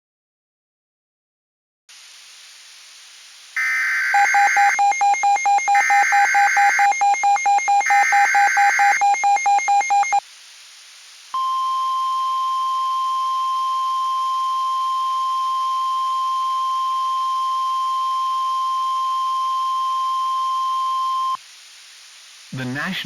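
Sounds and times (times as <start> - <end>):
rapid electronic beeping tones: 3.6 - 10.2
steady warning alarm tone: 3.6 - 10.2, 11.4 - 21.4.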